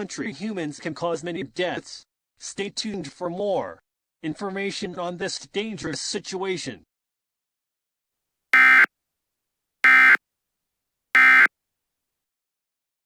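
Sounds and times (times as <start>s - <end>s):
short buzzing data bursts: 8.6s - 8.9s, 9.8s - 10.2s, 11.2s - 11.5s.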